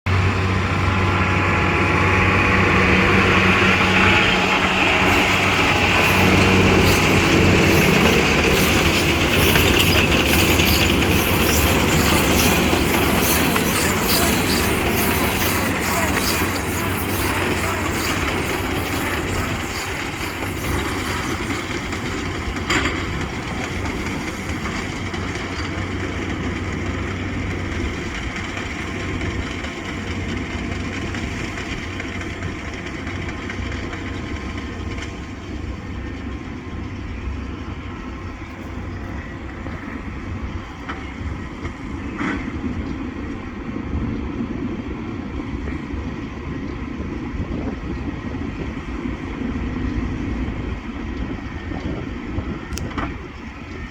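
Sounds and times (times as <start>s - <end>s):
baler machinery clatter: 0.1s - 35.6s
tractor engine hum: 0.1s - 42.0s.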